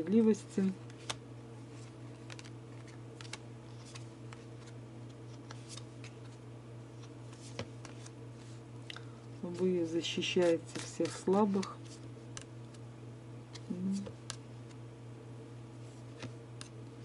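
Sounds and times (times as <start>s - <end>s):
low electrical hum: 0.0s - 17.0s
cards clicking and tapping: 0.8s - 1.2s, 2.2s - 4.7s, 7.0s - 8.1s, 13.5s - 14.4s, 16.1s - 16.8s.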